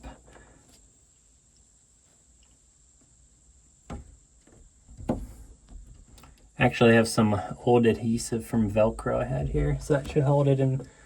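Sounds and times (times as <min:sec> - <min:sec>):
taps and rustles: 0:03.9 - 0:06.5.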